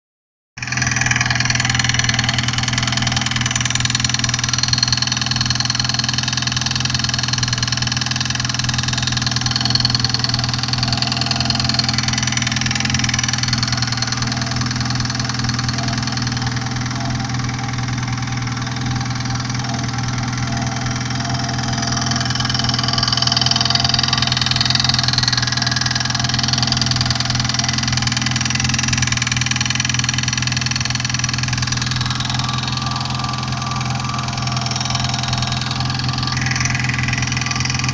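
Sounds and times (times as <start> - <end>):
car engine idling: 0.6 - 37.9.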